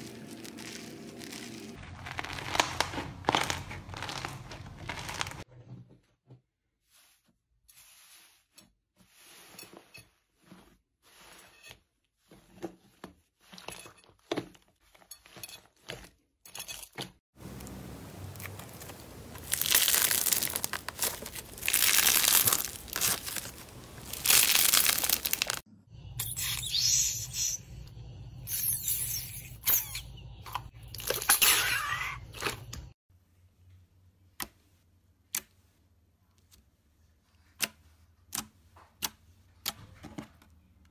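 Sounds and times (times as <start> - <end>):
slime crackling and crunching: 0.0 - 5.5, 18.3 - 25.7.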